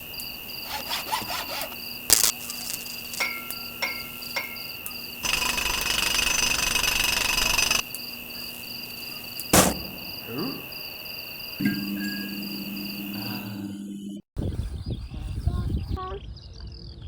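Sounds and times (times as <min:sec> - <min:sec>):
insect chirping: 0:00.0 - 0:13.7
small electric motor buzzing: 0:00.6 - 0:03.3, 0:05.2 - 0:07.8.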